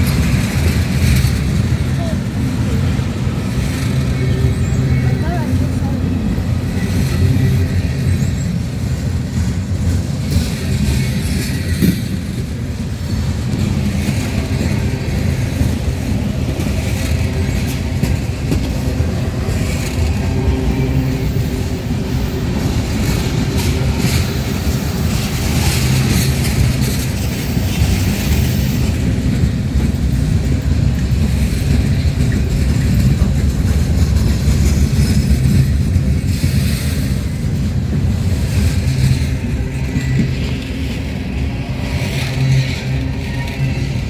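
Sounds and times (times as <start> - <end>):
freight train rumbling past: 0.0 - 44.0.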